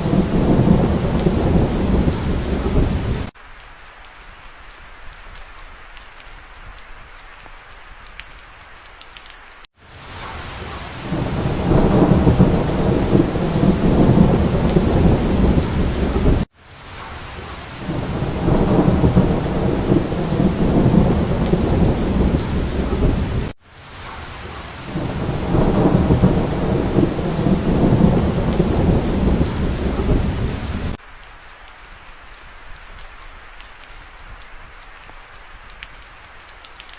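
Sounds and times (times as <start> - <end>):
thunder rumbling: 0.0 - 3.3, 10.0 - 31.0
steady rain: 0.0 - 36.9.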